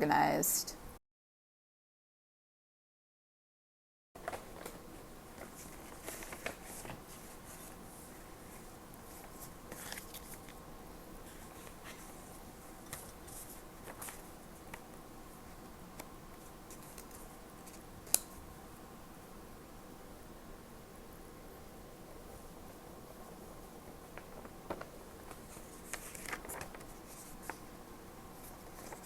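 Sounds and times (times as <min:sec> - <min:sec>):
paper rustling: 0:04.2 - 0:10.6, 0:11.2 - 0:14.9, 0:24.1 - 0:27.7, 0:28.4 - 0:29.0.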